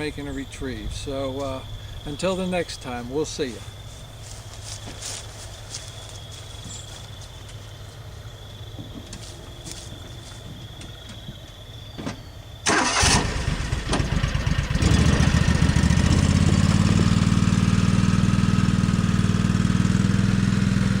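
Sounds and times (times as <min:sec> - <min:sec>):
engine starting and idling: 0:12.6 - 0:21.0.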